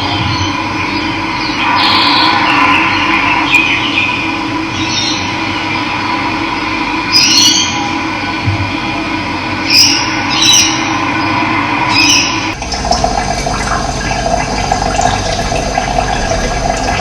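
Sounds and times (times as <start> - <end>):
birds chirping: 0.0 - 6.1, 9.6 - 17.0
running water: 11.9 - 17.0.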